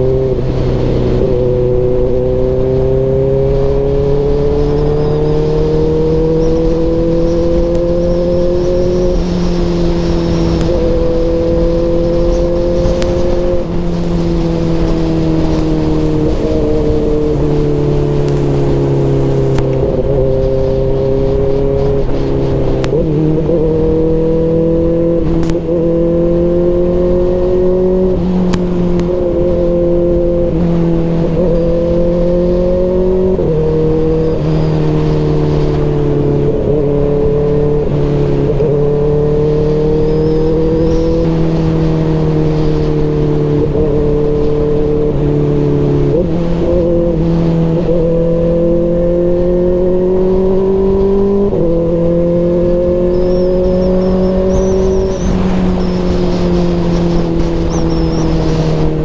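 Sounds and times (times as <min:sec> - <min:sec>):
motorcycle engine running: 0:13.8 - 0:19.6, 0:41.2 - 0:58.3.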